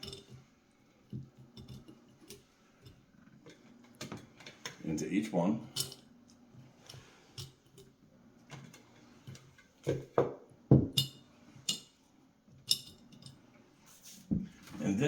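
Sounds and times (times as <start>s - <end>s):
glass jars knocking and clinking: 9.9s - 11.9s.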